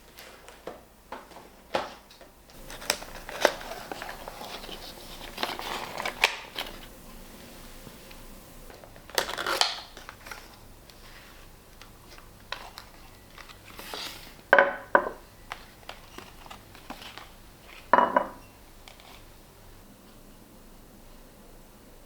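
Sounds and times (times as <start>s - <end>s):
dishes and utensils clattering: 17.9s - 18.5s.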